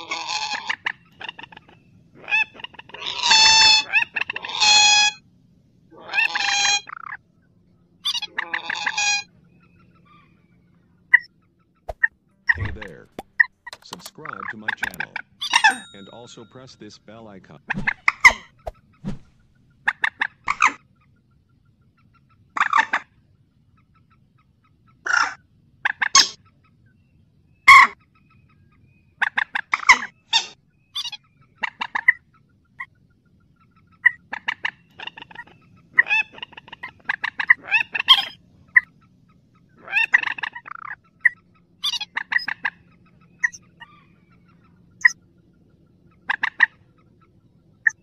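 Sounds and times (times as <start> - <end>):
rail bird calling harshly: 0.0 - 5.2, 8.0 - 9.3, 14.2 - 16.2, 34.0 - 38.9.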